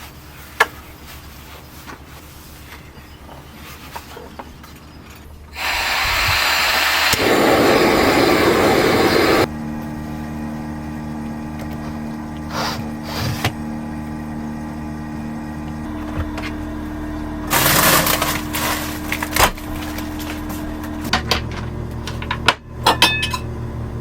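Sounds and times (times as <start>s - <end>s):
machine rushing and humming: 5.6s - 9.5s.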